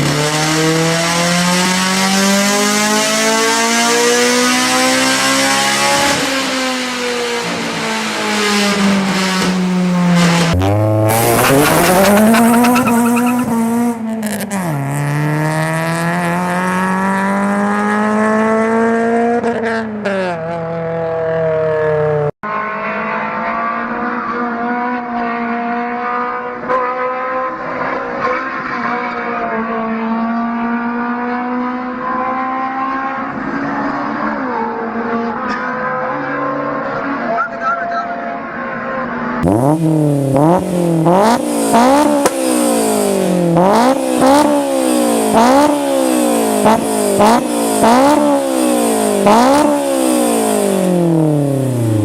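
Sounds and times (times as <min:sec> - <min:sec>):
engine revving hard: 0:00.0 - 0:19.8, 0:39.4 - 0:52.0
engine running at steadier revs: 0:00.0 - 0:20.0, 0:39.4 - 0:52.0.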